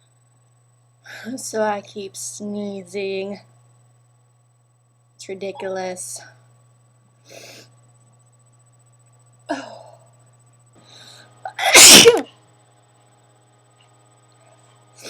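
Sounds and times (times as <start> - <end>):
person sneezing: 11.5 - 12.3.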